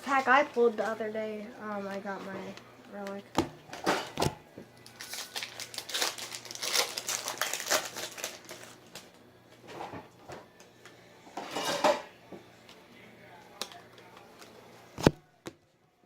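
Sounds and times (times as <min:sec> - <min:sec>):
card pack wrapper crinkling: 0:04.8 - 0:09.0.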